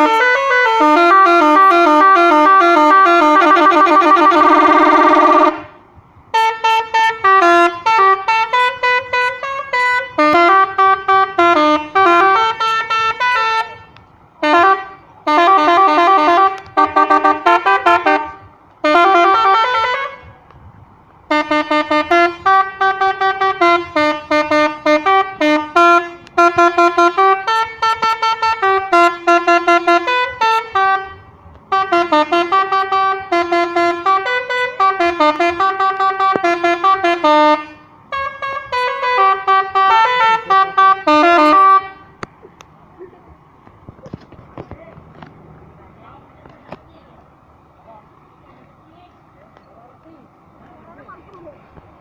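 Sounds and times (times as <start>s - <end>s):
multi-tone bus air horn melody: 0.0s - 20.5s, 21.2s - 42.3s.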